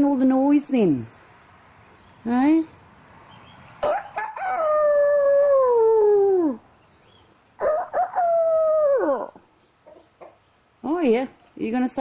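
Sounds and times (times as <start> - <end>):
rooster crowing: 3.8 - 6.1, 7.6 - 9.4.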